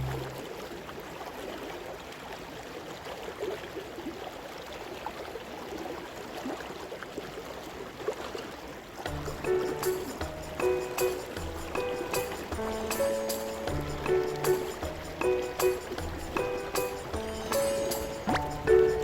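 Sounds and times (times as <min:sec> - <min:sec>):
music: 0:00.0 - 0:00.4, 0:09.1 - 0:19.0.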